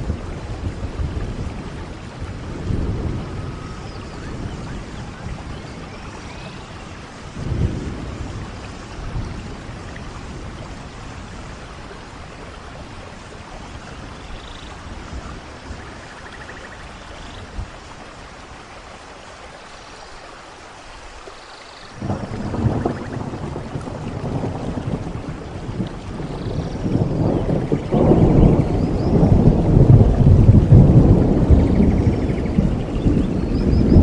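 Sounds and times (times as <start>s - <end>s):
thunder rolling: 0.0s - 16.8s, 22.0s - 34.0s
steady rain: 0.0s - 34.0s.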